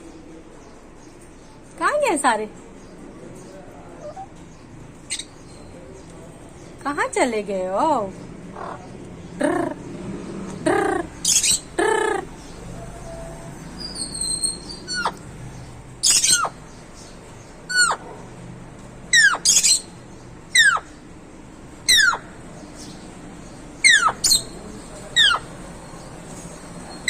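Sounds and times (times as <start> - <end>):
parrot squawks: 10.8 - 12.3, 14.0 - 15.2, 16.0 - 16.6, 17.7 - 18.0, 19.1 - 19.9, 20.6 - 20.9, 21.9 - 22.2, 23.8 - 24.4.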